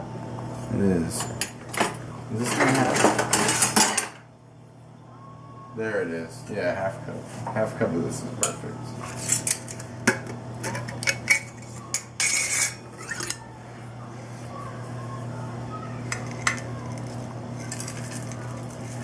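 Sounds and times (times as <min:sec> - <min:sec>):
steady low hum: 0:00.0 - 0:19.0
utensils clinking against dishes: 0:01.2 - 0:04.2, 0:08.4 - 0:13.5, 0:16.0 - 0:19.0.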